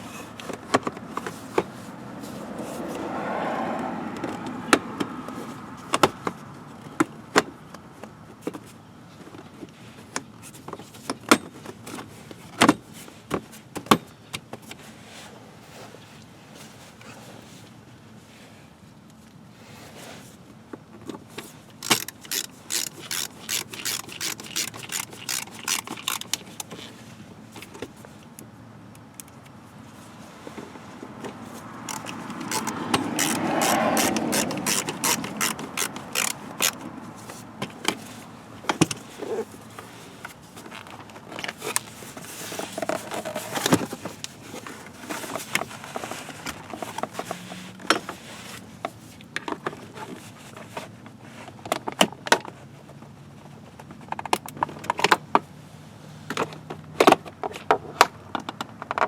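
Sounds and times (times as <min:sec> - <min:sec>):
ratchet wrench clicking: 0:21.8 - 0:26.6, 0:31.8 - 0:37.3.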